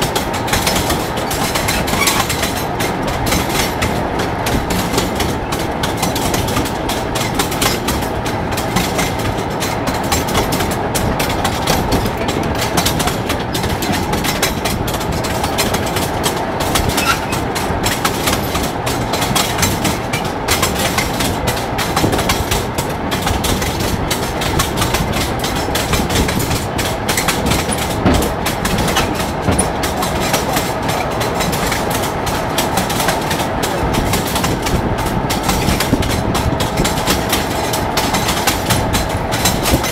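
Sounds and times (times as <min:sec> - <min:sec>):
rail trolley rattling: 0:00.0 - 0:39.9
wheels clattering over rails: 0:00.0 - 0:39.9.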